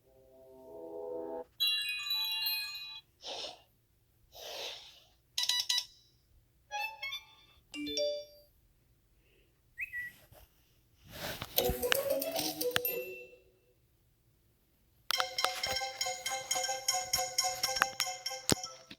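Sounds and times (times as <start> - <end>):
falling two-note tone: 0.0 - 1.4.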